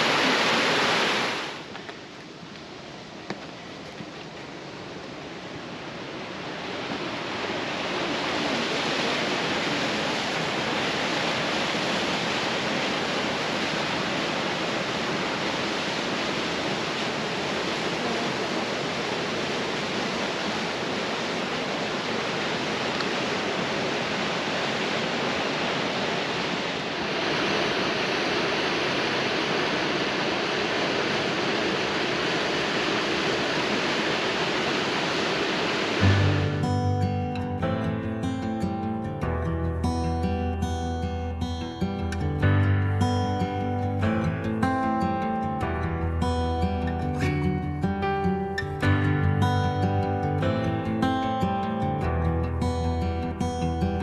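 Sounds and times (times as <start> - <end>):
waterfall rushing: 0.0 - 39.0.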